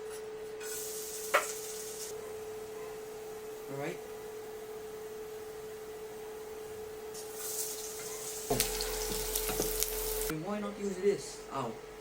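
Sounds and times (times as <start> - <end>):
hot oil sizzling in a frying pan: 0.6 - 2.2, 7.1 - 10.3.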